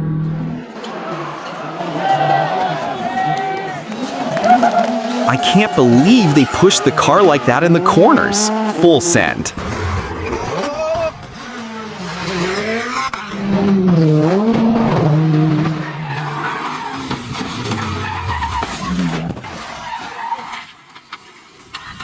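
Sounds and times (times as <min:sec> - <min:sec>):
rally car engine revving: 0:03.8 - 0:20.2.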